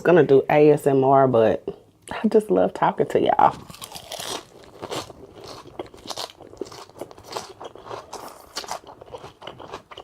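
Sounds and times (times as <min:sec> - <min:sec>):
person chewing crunchy salad: 0:03.5 - 0:10.0.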